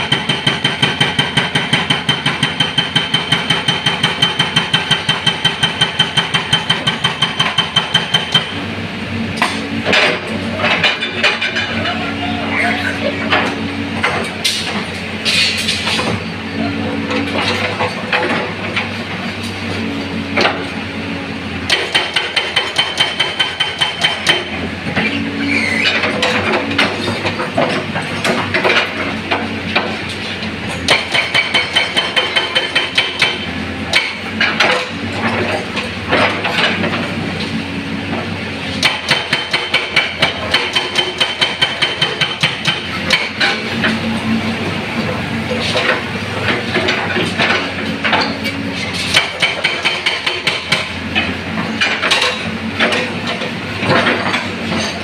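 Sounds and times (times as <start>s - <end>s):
hydraulic breaker hammering concrete: 0.0s - 8.6s, 9.3s - 11.8s, 21.5s - 37.2s, 38.6s - 55.0s
excavator engine running: 0.0s - 55.0s.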